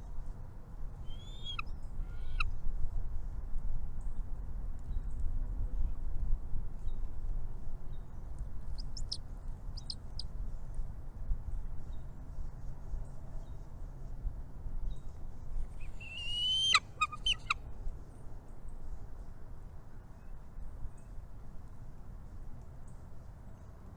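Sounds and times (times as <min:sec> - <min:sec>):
small birds chirping: 0:01.1 - 0:02.4, 0:08.8 - 0:09.2, 0:09.8 - 0:10.2, 0:15.8 - 0:17.6.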